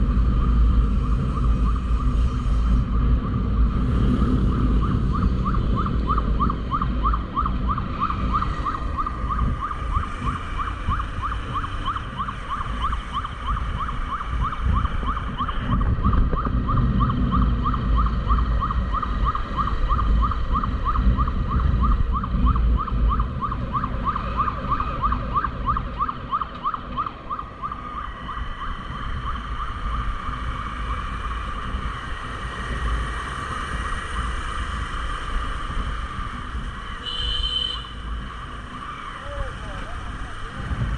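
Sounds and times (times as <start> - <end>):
wind rumble: 0.0 - 40.9
electronic siren yelping: 4.4 - 31.0.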